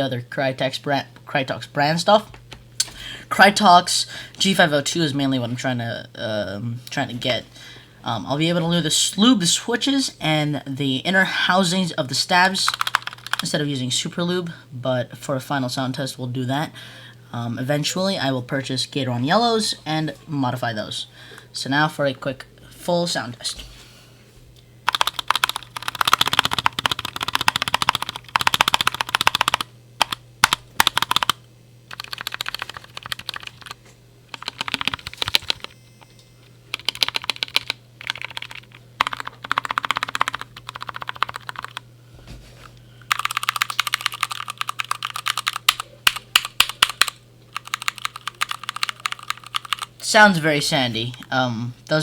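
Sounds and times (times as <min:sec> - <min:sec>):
fast typing on mechanical keyboard: 0:12.6 - 0:13.5, 0:24.9 - 0:35.7, 0:36.7 - 0:41.8, 0:43.1 - 0:49.9.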